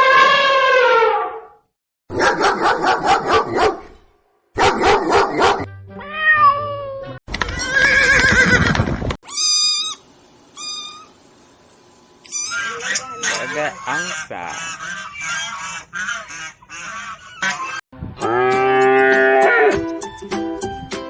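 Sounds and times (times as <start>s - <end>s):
short high animal calls: 9.3s - 11.1s, 12.3s - 15.6s
rapidly pulsing animal calls: 12.3s - 17.8s
rasping animal call: 12.3s - 19.8s.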